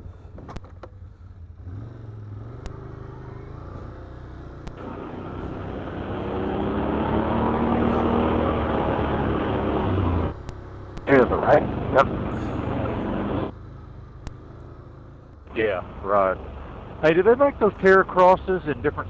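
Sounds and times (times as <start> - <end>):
atv engine running: 4.7 - 13.5, 15.5 - 19.0.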